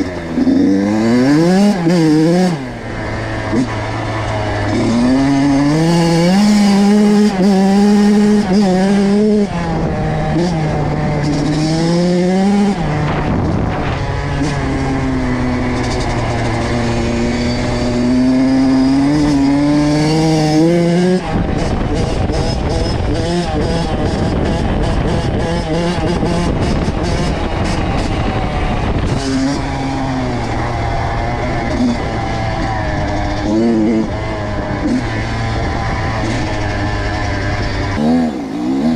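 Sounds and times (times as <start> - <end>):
dirt bike engine revving hard: 0.0 - 38.9.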